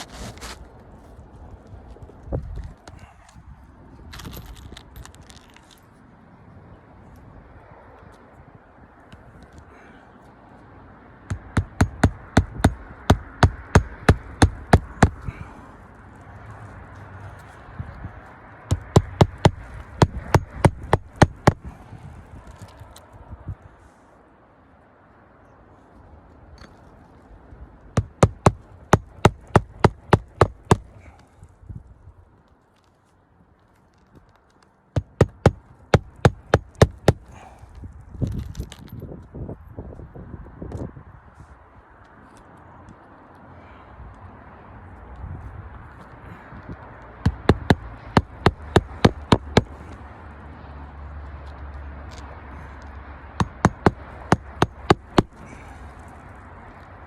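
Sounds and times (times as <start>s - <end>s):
hammer driving nails: 11.3s - 15.3s, 18.7s - 21.7s, 28.0s - 30.9s, 35.0s - 37.3s, 47.2s - 49.8s, 53.3s - 55.4s.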